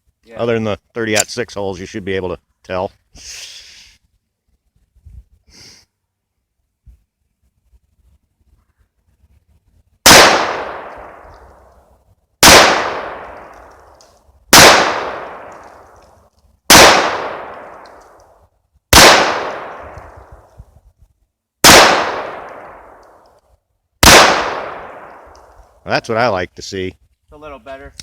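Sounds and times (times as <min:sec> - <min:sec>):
pistol shots: 0:10.0 - 0:11.5, 0:12.4 - 0:13.9, 0:14.5 - 0:16.0, 0:16.7 - 0:18.2, 0:18.9 - 0:20.3, 0:21.6 - 0:23.2, 0:24.0 - 0:25.5.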